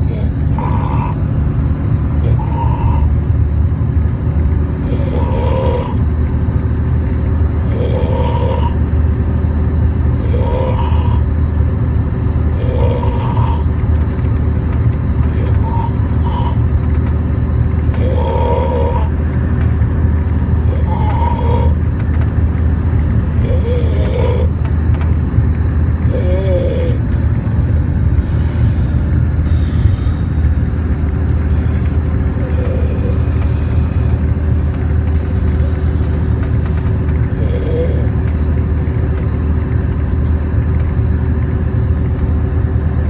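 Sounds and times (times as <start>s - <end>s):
man snoring: 0.0s - 1.3s, 2.1s - 3.2s, 4.8s - 6.1s, 7.6s - 8.9s, 10.2s - 11.4s, 12.4s - 13.8s, 15.3s - 16.7s, 17.9s - 19.2s, 20.6s - 21.8s, 23.4s - 24.6s, 26.1s - 27.1s, 31.5s - 34.4s, 35.1s - 38.2s
bus engine rumble: 0.0s - 43.0s.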